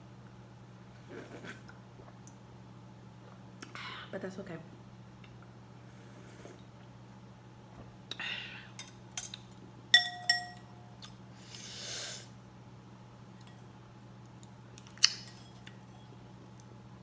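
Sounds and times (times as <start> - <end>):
utensil clinking against bowl: 8.8 - 10.8.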